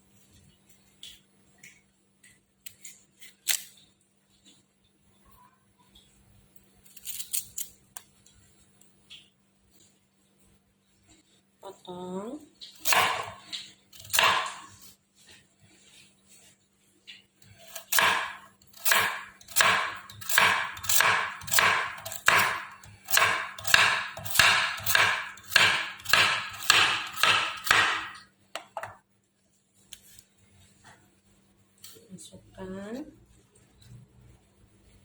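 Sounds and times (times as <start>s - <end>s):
knife slicing carrots on board: 12.7s - 14.9s, 17.6s - 28.2s.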